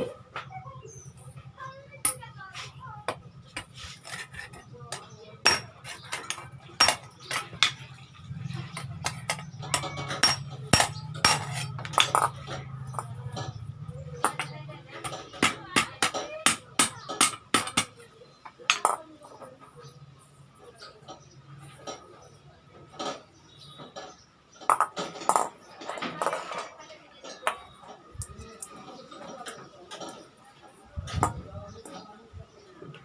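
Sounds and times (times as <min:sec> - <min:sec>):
hammer strikes on iron: 0:05.5 - 0:07.8, 0:09.0 - 0:12.3, 0:15.1 - 0:18.0.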